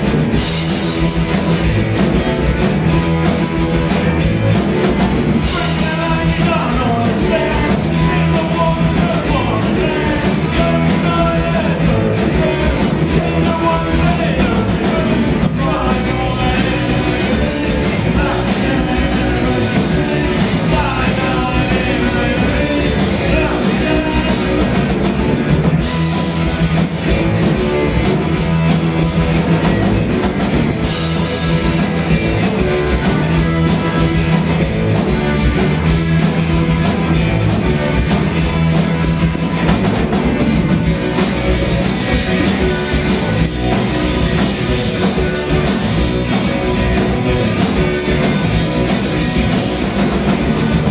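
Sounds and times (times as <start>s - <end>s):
rock band playing: 0.0s - 50.9s
person singing: 5.4s - 24.9s.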